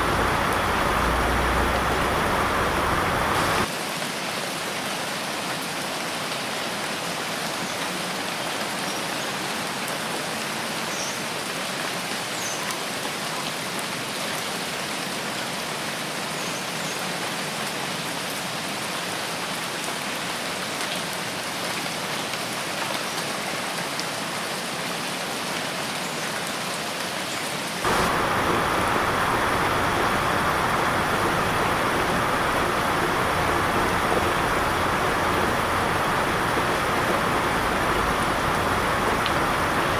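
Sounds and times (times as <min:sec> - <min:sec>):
deep rushing rain: 0:00.0 - 0:03.7, 0:27.8 - 0:39.9
rain drops pattering: 0:00.0 - 0:03.7, 0:27.8 - 0:39.9
steady rain hiss: 0:00.0 - 0:03.8, 0:27.8 - 0:39.9.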